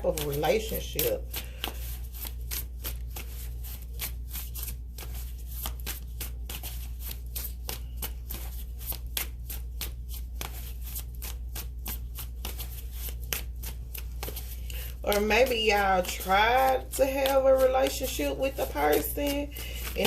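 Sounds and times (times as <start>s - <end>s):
cards shuffling: 0.0s - 20.0s
low steady hum: 0.0s - 20.0s.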